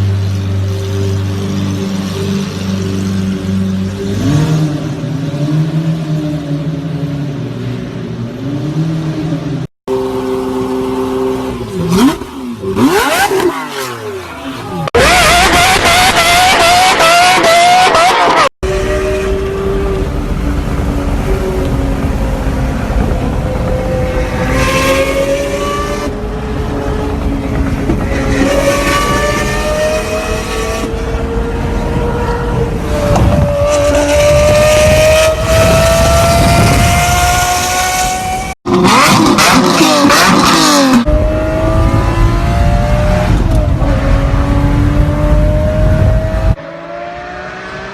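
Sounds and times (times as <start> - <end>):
sports car engine idling and revving: 0.0 - 47.9.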